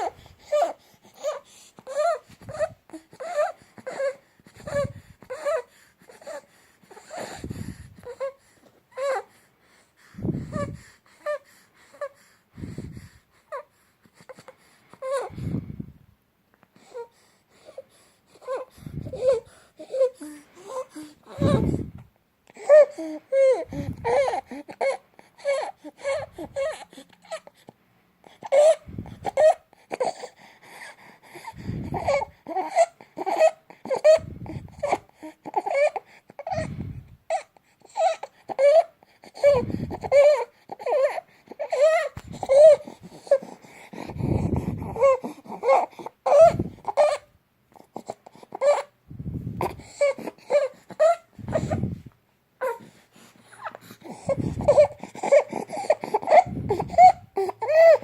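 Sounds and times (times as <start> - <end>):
baby whimpering: 0.0 - 9.4, 10.2 - 15.6, 16.8 - 58.0
baby breathing with squeaky stridor: 0.0 - 15.9, 16.8 - 22.0, 22.6 - 27.6, 28.3 - 47.3, 47.9 - 58.0.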